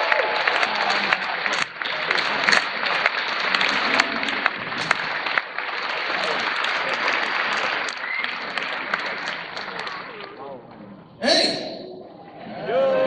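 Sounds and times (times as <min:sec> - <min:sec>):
audience applauding: 0:00.0 - 0:10.4.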